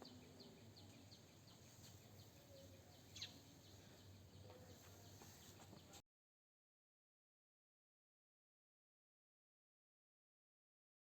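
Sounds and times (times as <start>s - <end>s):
faint bird chirps: 0.0s - 6.0s
outdoor background noise: 0.0s - 6.0s.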